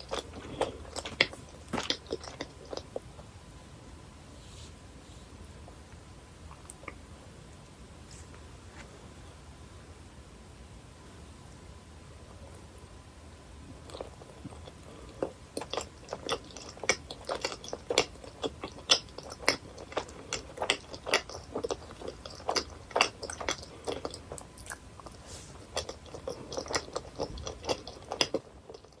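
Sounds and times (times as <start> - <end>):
chewing gummy candy: 0.0 - 3.3, 13.7 - 29.0.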